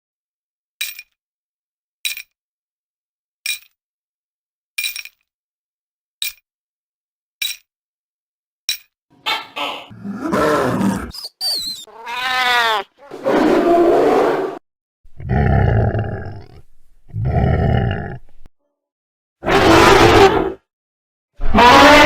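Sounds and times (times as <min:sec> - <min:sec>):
wavering animal call: 0:09.3 - 0:14.5
low animal roars: 0:09.9 - 0:11.2, 0:13.1 - 0:18.5
high whistling animal call: 0:10.6 - 0:14.5.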